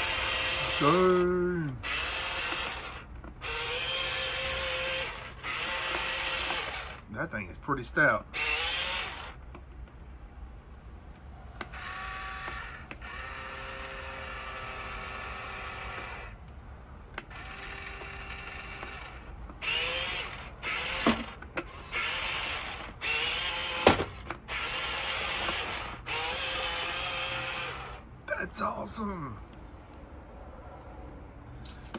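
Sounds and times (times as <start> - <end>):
toy truck electric motor whining: 0.0 - 7.1, 8.3 - 9.6, 11.6 - 16.5, 17.2 - 28.1.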